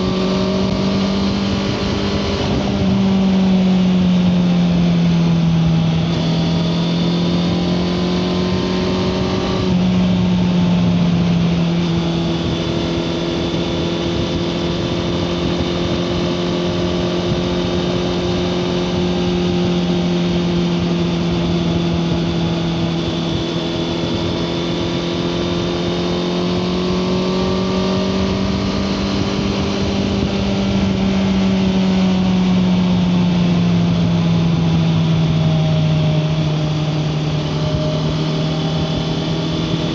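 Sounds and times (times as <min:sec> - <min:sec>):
motorcycle engine cruising: 0:00.0 - 0:39.9.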